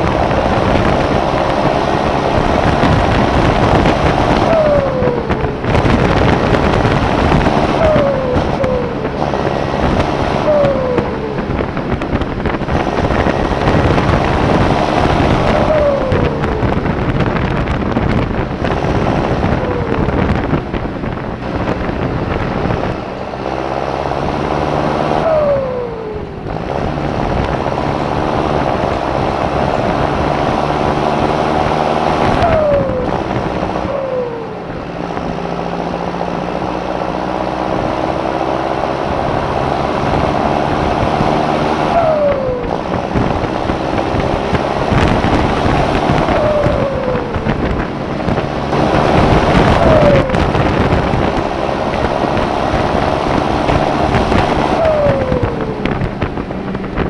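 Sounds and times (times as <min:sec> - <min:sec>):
tractor engine running: 0:00.0 - 0:57.0
turbocharger whistle: 0:03.6 - 0:06.4, 0:07.5 - 0:11.5, 0:15.3 - 0:16.8, 0:25.0 - 0:26.5, 0:32.1 - 0:34.7, 0:41.7 - 0:44.0, 0:46.0 - 0:47.5, 0:48.8 - 0:50.9, 0:52.9 - 0:56.0.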